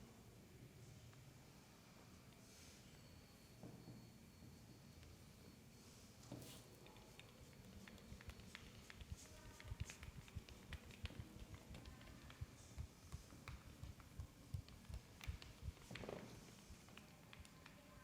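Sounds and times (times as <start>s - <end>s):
massage pats and taps: 6.8s - 17.8s.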